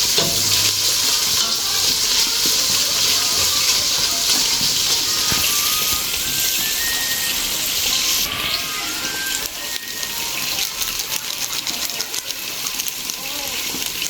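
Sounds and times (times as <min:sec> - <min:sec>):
water running from tap: 0:00.0 - 0:14.0
water splashing: 0:00.0 - 0:14.0.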